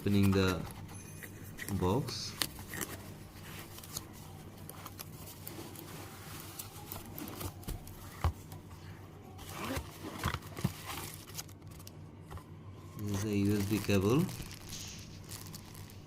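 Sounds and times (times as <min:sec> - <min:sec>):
cardboard scraping and rustling: 0:00.0 - 0:00.9, 0:01.6 - 0:08.4, 0:09.4 - 0:11.5.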